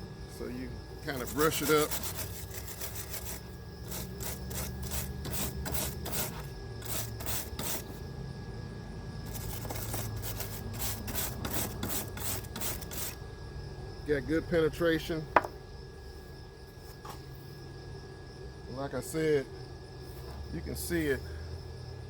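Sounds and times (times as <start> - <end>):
wire brush scraping metal: 1.1 - 8.0, 9.3 - 13.2.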